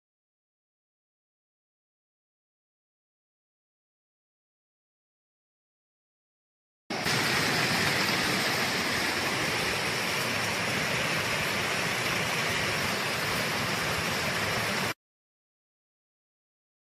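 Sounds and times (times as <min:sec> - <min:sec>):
heavy rain hissing: 0:06.9 - 0:15.0.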